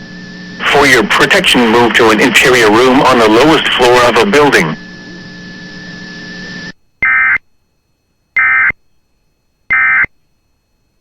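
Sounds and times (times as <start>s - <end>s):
radio hiss: 0.0s - 6.8s
faint steady tone: 2.4s - 11.0s
short data bursts: 7.0s - 7.4s, 8.4s - 8.8s, 9.7s - 10.2s.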